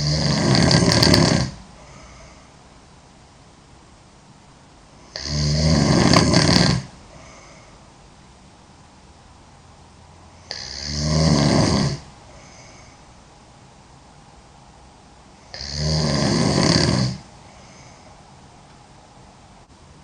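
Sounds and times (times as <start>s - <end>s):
girl snoring: 0.0s - 2.5s, 5.0s - 7.7s, 10.4s - 13.0s, 15.4s - 18.1s.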